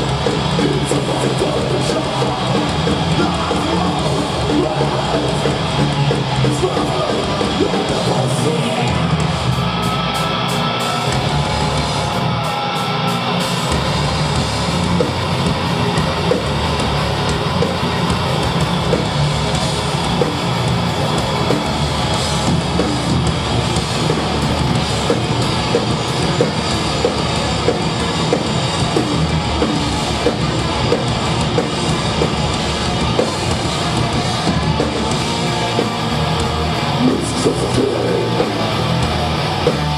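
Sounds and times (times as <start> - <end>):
death metal band playing live: 0.0 - 39.9.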